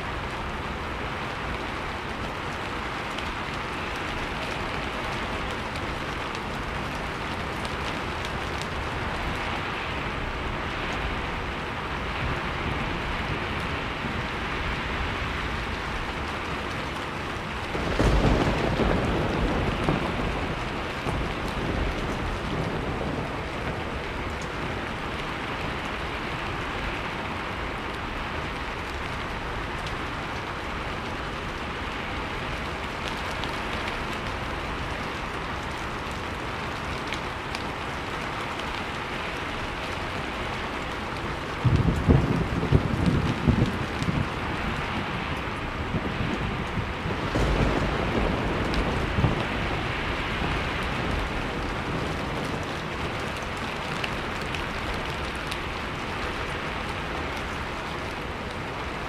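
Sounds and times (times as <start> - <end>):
heavy rain: 0.0 - 59.0
thunder rolling: 17.6 - 24.3, 41.4 - 55.3.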